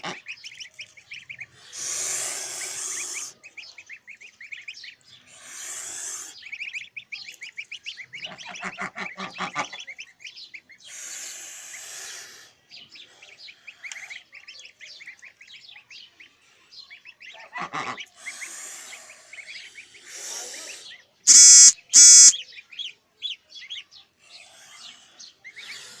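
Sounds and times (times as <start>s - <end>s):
goslings peeping: 0.0s - 12.5s, 16.9s - 23.8s
short bursts of hissing: 1.8s - 3.3s, 21.3s - 22.3s
low honking call: 21.3s - 22.4s.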